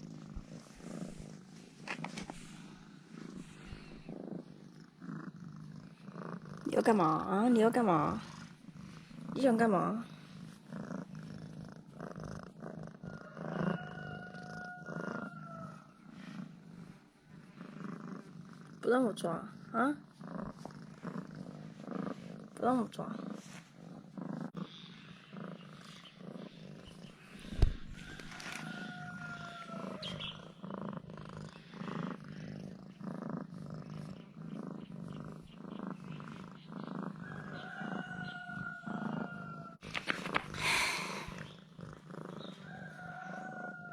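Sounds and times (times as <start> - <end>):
cat purring: 0.0 - 43.9.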